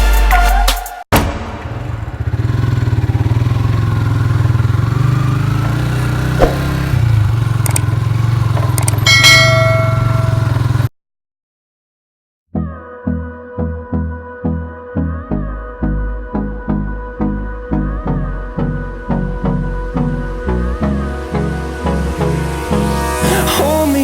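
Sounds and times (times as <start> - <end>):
small engine running: 1.9 - 10.9
brief ringing tone: 9.1 - 10.8.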